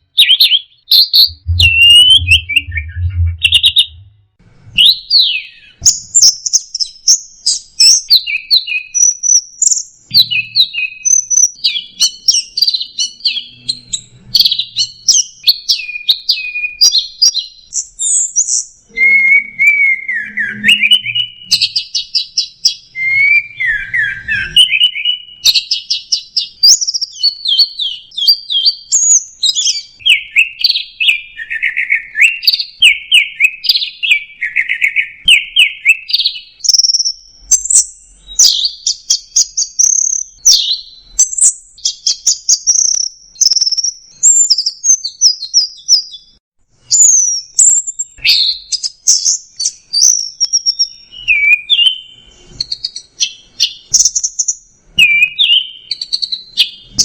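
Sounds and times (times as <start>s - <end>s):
thrush singing: 1.2s - 4.1s.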